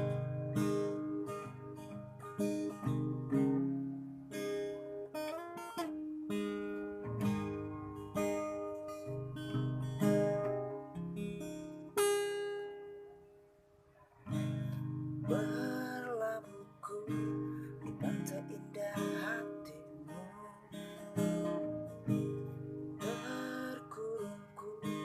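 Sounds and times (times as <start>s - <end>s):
acoustic guitar strumming: 0.0s - 13.2s, 14.2s - 25.0s.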